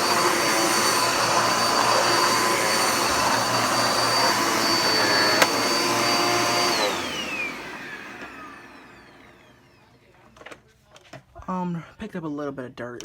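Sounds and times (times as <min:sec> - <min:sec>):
vacuum cleaner motor whine: 0:00.0 - 0:10.1.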